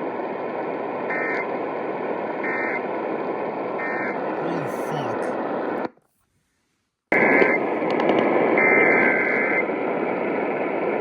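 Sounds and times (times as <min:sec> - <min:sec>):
radio static hiss: 0:07.1 - 0:10.1.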